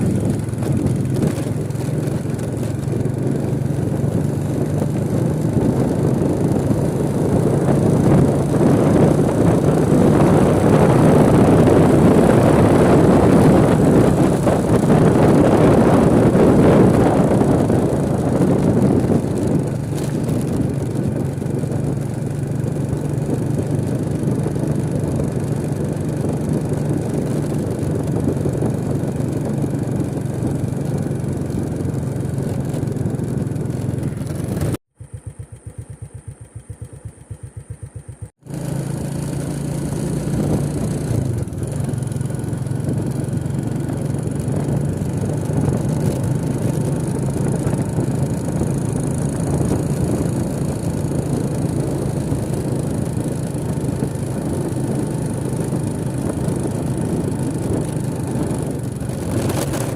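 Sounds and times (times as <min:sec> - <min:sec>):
wind rushing on microphone: 0:00.0 - 0:34.8, 0:38.5 - 0:59.9
motorcycle engine running: 0:00.0 - 0:59.9
rapid low pulsing: 0:27.6 - 0:41.6.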